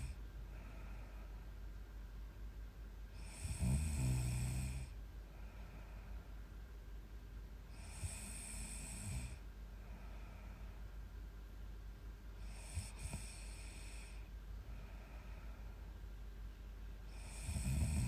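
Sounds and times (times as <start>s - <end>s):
quiet breathing: 0.0s - 7.0s, 7.6s - 18.0s
woman snoring: 3.2s - 5.0s, 7.7s - 9.4s, 12.4s - 14.2s, 17.1s - 18.0s.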